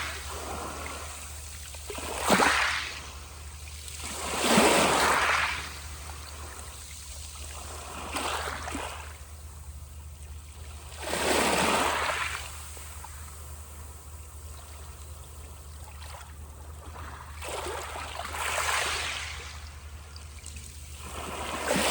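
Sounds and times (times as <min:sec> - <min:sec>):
sea waves breaking: 0:00.0 - 0:09.2, 0:21.0 - 0:21.9.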